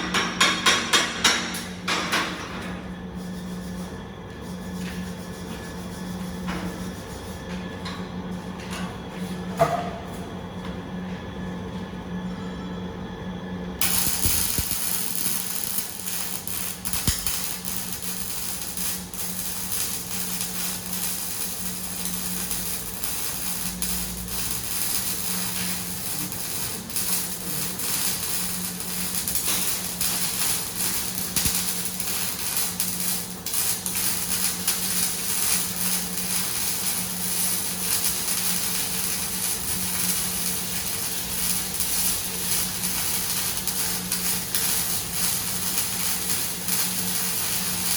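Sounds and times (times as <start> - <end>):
welding machine electrical hum: 0.0 - 47.9
welding arc crackling: 13.8 - 47.9.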